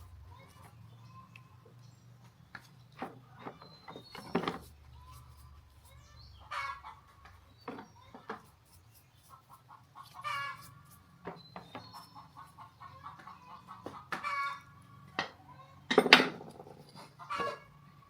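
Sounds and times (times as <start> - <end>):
chickens clucking: 6.4 - 8.1, 9.2 - 15.9, 16.9 - 18.0.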